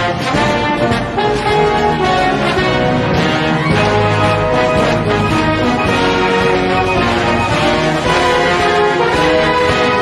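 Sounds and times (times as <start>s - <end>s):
orchestral music with brass: 0.0s - 10.0s.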